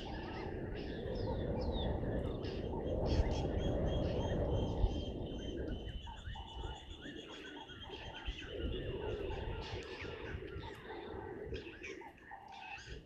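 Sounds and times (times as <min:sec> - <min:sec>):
wild birds chirping: 0:00.0 - 0:13.0.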